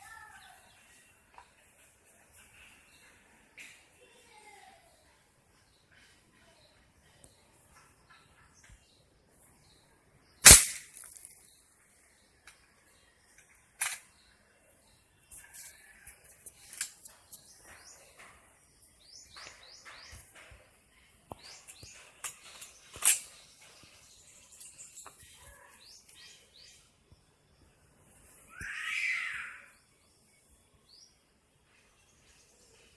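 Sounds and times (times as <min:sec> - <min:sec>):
birds chirping: 0:00.0 - 0:32.9
air rifle clacks: 0:10.4 - 0:11.2.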